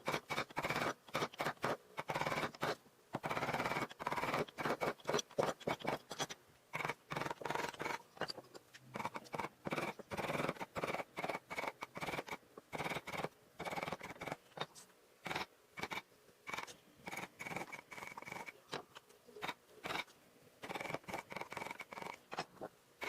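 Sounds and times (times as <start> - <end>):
blade scraping wood: 0.0 - 6.3.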